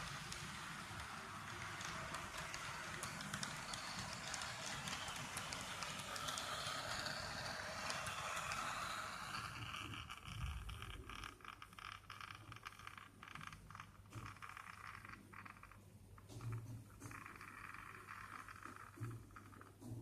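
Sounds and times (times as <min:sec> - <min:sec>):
small electric motor whirring: 0:00.0 - 0:10.8
choppy rattle: 0:00.0 - 0:15.7.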